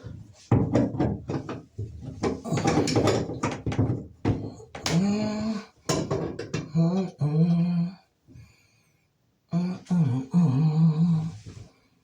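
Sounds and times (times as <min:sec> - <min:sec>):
man humming: 0:06.7 - 0:08.0, 0:09.5 - 0:11.4.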